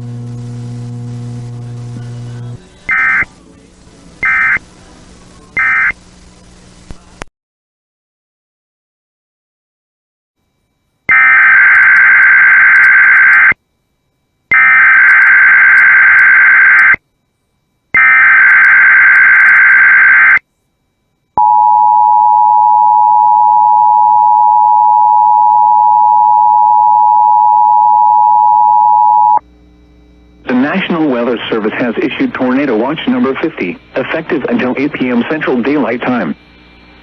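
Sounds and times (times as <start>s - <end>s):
two-tone attention signal: 2.9s - 3.3s
digital data tones buzzy warble: 4.2s - 4.6s, 5.6s - 5.9s.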